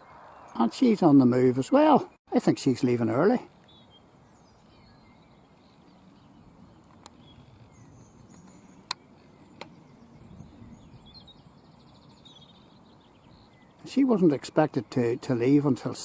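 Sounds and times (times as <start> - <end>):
faint bird chirps: 3.6 - 13.9.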